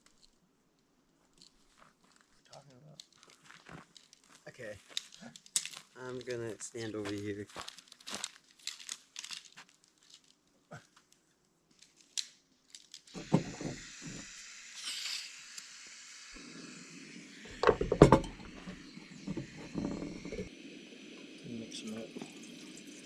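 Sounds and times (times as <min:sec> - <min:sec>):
steady hiss: 0:02.6 - 0:08.9, 0:12.8 - 0:23.0
cookware and utensils clattering: 0:17.5 - 0:20.5.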